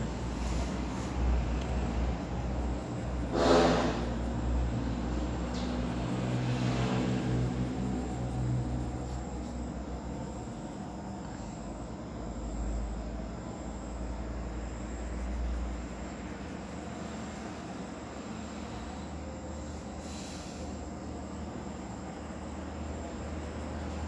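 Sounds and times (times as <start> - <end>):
vehicle engine passing: 3.1 - 9.9.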